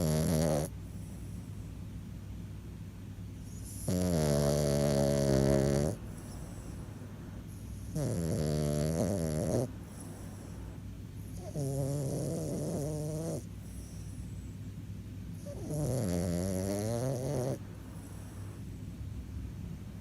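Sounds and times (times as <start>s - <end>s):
dog snoring: 0.0s - 1.5s, 3.4s - 6.9s, 7.5s - 14.3s, 15.4s - 18.7s
dog breathing quietly: 0.0s - 2.1s, 3.1s - 19.0s.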